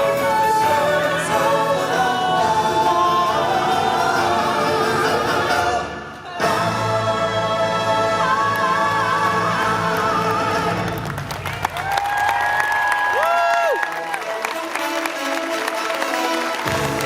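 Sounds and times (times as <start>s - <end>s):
choir singing held notes: 0.0s - 11.1s.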